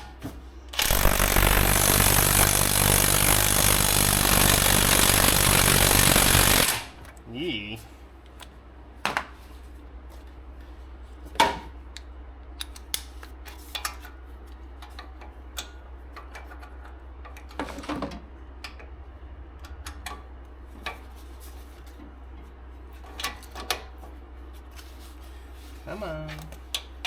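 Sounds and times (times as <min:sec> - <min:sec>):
steady low hum: 0:00.0 - 0:11.2.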